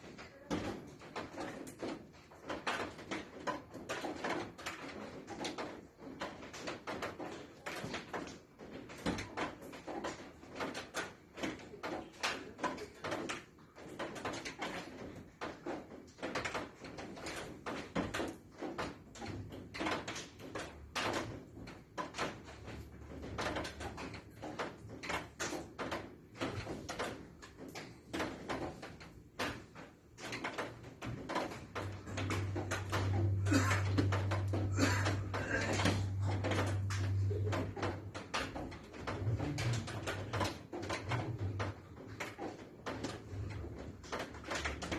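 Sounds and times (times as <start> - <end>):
knocking and clattering: 0.0 - 44.9.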